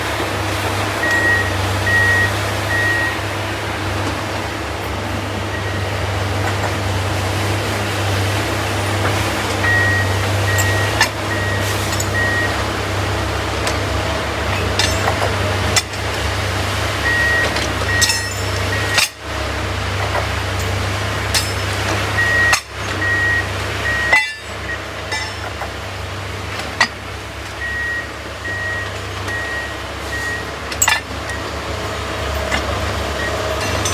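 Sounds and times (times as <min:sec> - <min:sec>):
diesel engine running: 0:00.0 - 0:33.9
alarm beeping: 0:01.0 - 0:03.3, 0:09.6 - 0:12.6.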